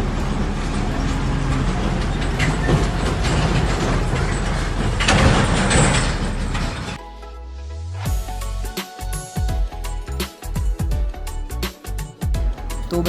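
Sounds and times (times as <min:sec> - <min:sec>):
background music: 0:07.0 - 0:13.0.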